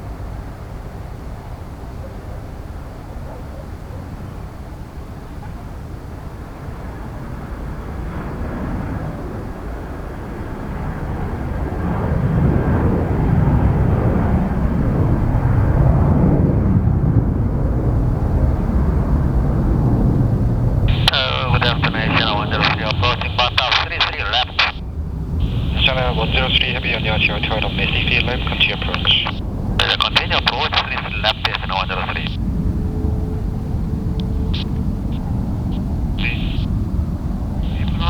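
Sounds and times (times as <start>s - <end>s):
jet engines rumbling: 6.3s - 38.0s.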